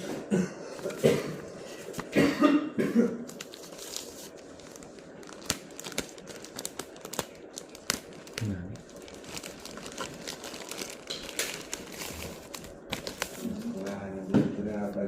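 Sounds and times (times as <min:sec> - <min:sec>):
person coughing: 0:00.0 - 0:01.5, 0:02.1 - 0:03.3
packaging being handled: 0:03.2 - 0:15.0.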